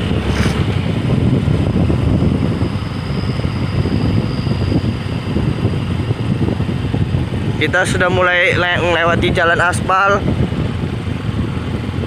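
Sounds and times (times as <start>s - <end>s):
vehicle rumbling on the move: 0.0s - 12.0s
wind on microphone: 0.0s - 12.0s.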